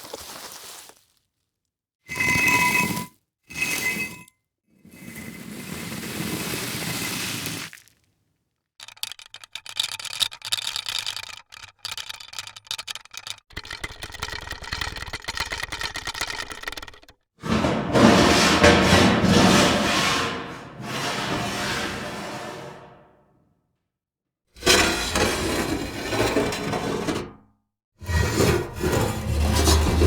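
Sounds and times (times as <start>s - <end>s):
rapid irregular rattling and clicking: 8.8s - 17.2s
scraping sound: 16.8s - 23.2s.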